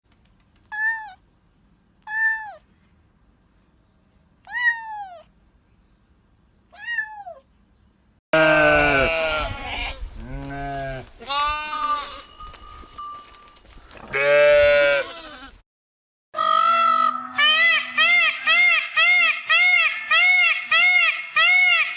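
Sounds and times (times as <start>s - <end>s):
background noise: 0.1s - 15.6s
kitten-like meows: 0.7s - 1.2s, 2.1s - 2.6s, 4.5s - 5.3s, 6.8s - 7.4s
livestock bleating: 8.4s - 12.3s, 14.1s - 15.6s.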